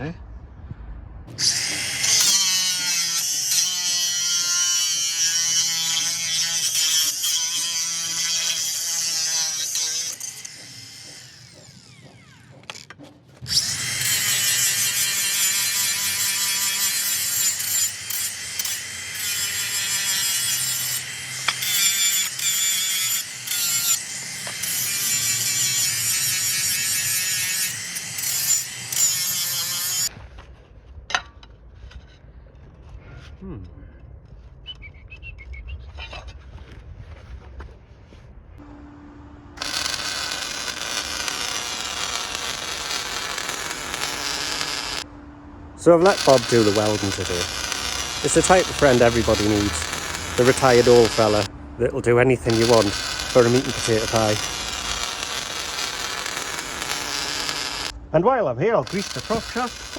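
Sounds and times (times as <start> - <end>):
power tool cutting steel plate: 1.3 - 30.1, 39.6 - 45.1, 45.7 - 58.0, 58.8 - 59.9.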